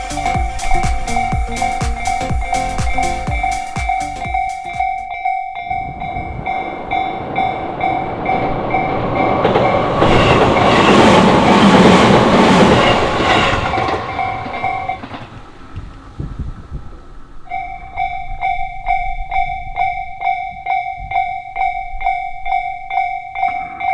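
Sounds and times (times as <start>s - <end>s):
level-crossing warning bell: 0.0s - 15.8s, 17.5s - 23.9s
train wheel clatter: 6.5s - 19.1s.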